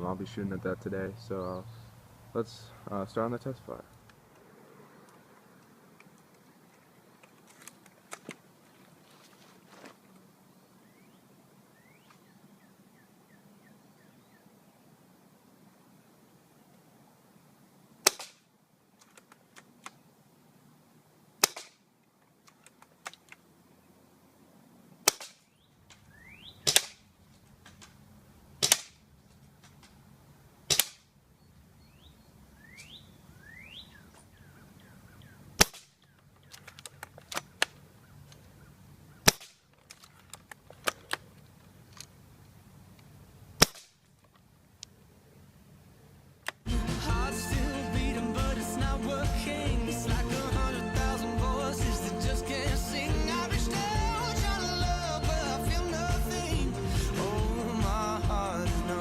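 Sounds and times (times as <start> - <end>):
airsoft rifle shots: 18.0 - 18.5, 21.4 - 21.8, 25.0 - 25.4, 26.6 - 27.0, 28.6 - 29.0, 30.7 - 31.0, 35.6 - 35.9, 39.2 - 39.6, 43.6 - 44.0
faint rifle bolt clicks: 19.0 - 20.0, 39.3 - 42.2.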